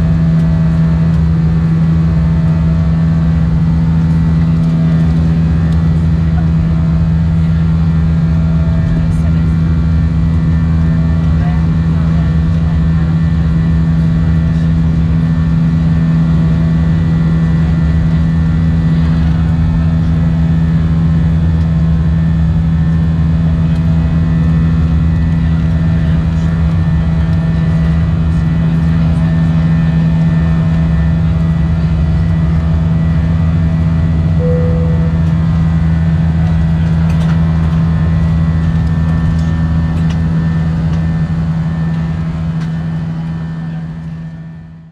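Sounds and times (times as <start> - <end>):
jet engine drone in cabin: 0.0 - 44.9
brief tone: 34.4 - 35.5.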